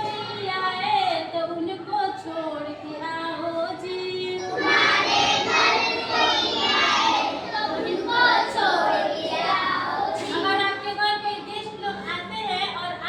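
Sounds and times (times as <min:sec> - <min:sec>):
children singing together: 0:04.1 - 0:10.9.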